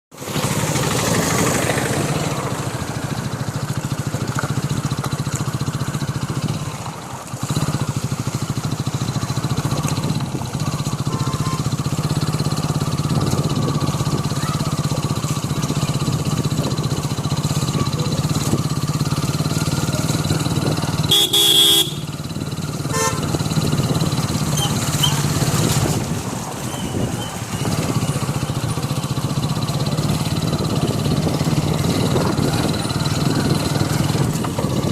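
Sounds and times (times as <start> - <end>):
motorcycle engine running: 0.2 - 34.9
vehicle horn honking: 21.0 - 23.6.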